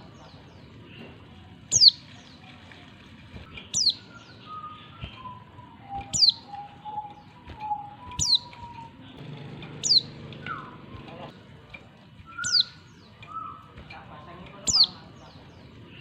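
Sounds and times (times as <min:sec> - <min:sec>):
soft low whistled bird notes: 0:03.4 - 0:11.3, 0:12.2 - 0:14.0
bird high downward call: 0:03.6 - 0:09.0, 0:12.3 - 0:13.6.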